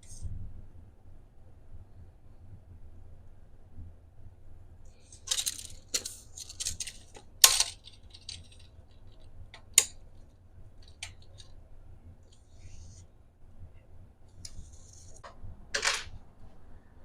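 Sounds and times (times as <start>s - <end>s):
small hard clinks and clatters: 5.0s - 10.0s.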